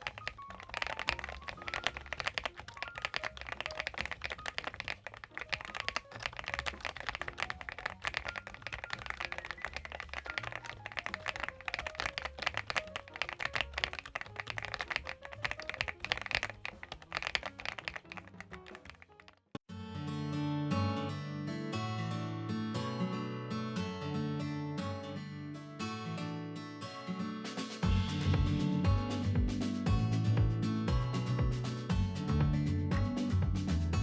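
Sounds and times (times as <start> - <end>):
fast mechanical keyboard typing: 0.0 - 19.4.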